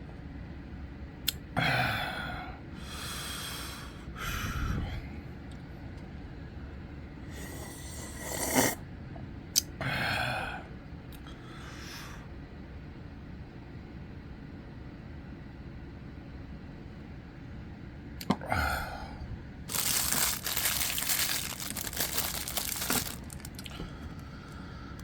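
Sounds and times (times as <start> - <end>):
person breathing noisily: 1.9 - 5.2, 18.4 - 21.6, 22.3 - 25.0.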